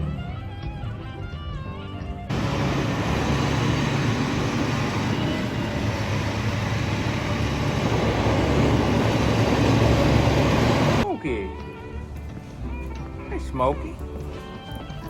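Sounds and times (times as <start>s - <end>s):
music: 0.0s - 15.0s
engine running: 2.3s - 11.0s
loud rushing noise: 2.3s - 11.0s
low hum: 2.3s - 11.0s.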